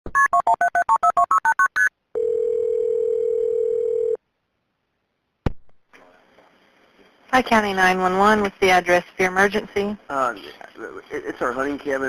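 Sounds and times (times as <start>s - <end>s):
telephone ringing tone: 0.2s - 4.2s.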